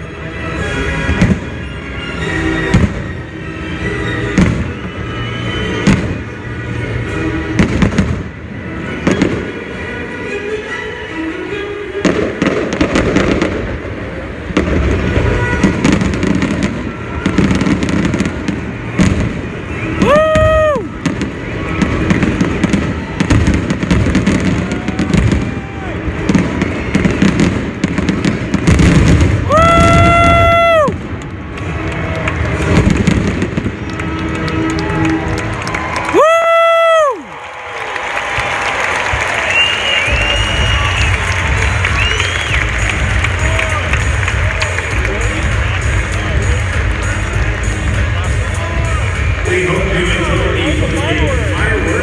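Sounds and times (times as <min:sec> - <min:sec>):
fireworks bangs and crackles: 0:00.0 - 0:09.8, 0:12.0 - 0:35.2, 0:37.8 - 0:52.0
music on sound system: 0:39.1 - 0:52.0.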